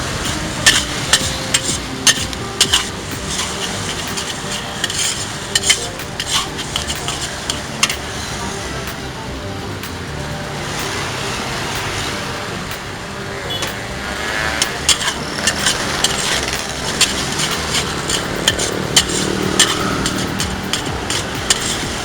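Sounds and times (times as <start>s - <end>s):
low engine drone: 0.0s - 22.0s
metal spatula clanking on wok: 0.2s - 8.2s, 14.6s - 22.0s.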